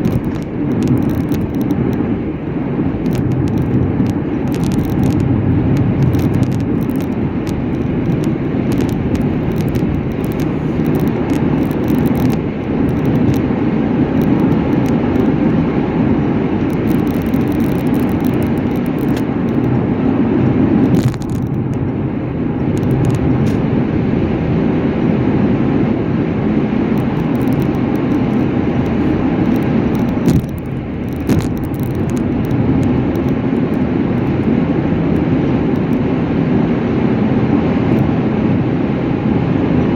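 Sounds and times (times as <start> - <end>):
small clicks and rattles: 0.0 - 2.1, 2.9 - 19.9, 20.8 - 23.7, 26.7 - 36.0
vehicle road noise: 0.0 - 39.9.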